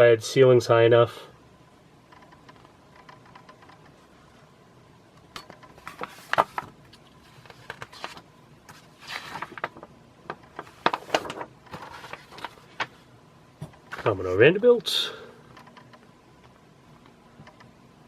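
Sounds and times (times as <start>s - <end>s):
paper pages rustling and clicking: 5.7s - 14.2s.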